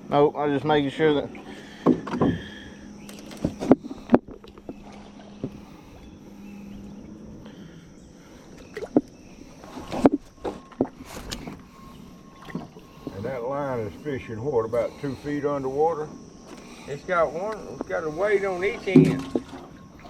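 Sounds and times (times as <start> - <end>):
faint low hum: 0.0 - 20.0
knocks and clunks in a boat: 1.0 - 7.3, 8.4 - 20.0.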